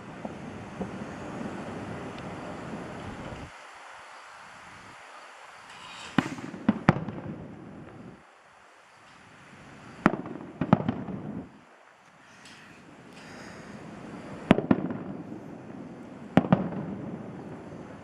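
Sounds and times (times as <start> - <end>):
fireworks bursting with echo: 0.0 - 3.6, 5.7 - 8.2, 9.9 - 11.7, 13.8 - 18.0.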